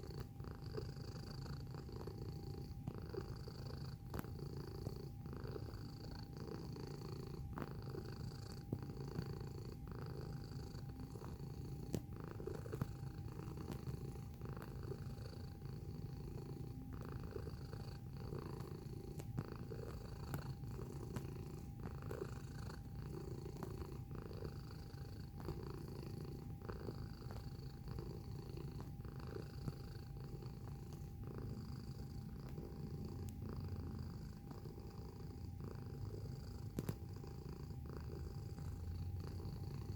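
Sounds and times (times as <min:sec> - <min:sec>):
cat purring: 0:00.0 - 0:39.9
faint ticks: 0:36.6 - 0:37.1.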